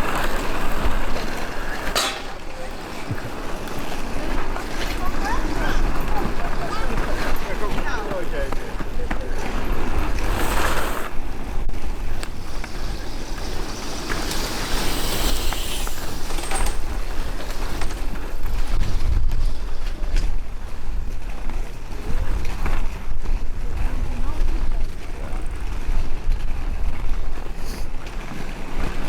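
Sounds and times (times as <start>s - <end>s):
outdoor noise: 0.0s - 29.0s
wind buffeting microphone: 0.0s - 29.0s.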